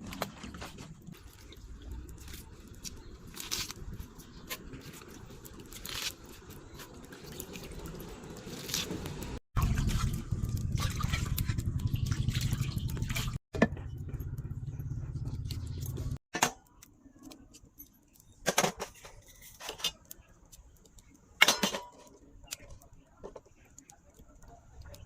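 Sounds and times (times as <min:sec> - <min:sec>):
low rumble: 0:09.6 - 0:16.2
metal kitchen utensils clinking: 0:21.4 - 0:22.2.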